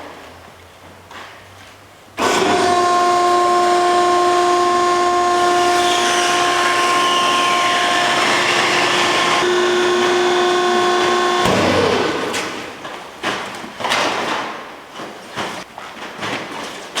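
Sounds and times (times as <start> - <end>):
hydraulic machine whine: 2.2 - 13.0.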